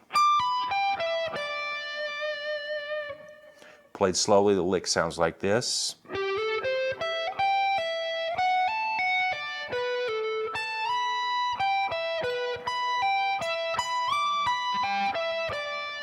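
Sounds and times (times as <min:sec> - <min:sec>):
electric guitar arpeggios: 0:00.0 - 0:03.8, 0:06.1 - 0:16.0.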